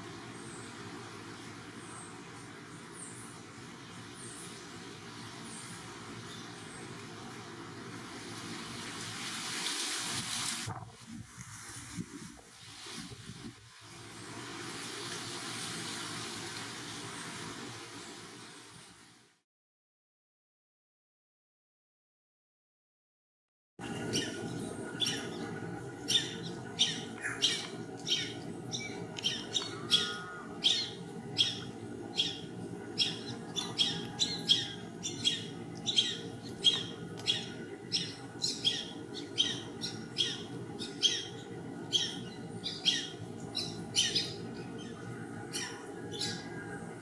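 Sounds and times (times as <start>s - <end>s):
birds squawking: 24.0s - 46.6s.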